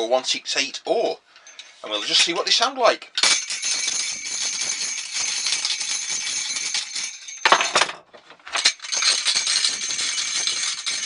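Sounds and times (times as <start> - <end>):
iron rattles jangling: 3.2 - 11.0.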